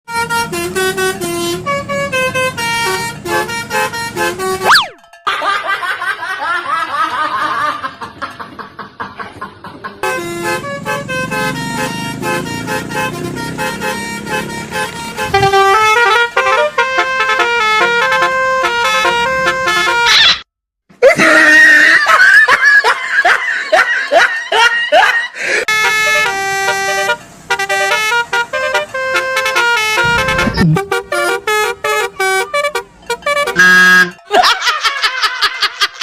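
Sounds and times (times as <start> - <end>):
multi-tone bus horns: 0.1 - 5.0, 10.0 - 20.4, 25.6 - 34.4
gliding horn wails: 0.2 - 5.1, 10.0 - 20.1, 26.1 - 34.2.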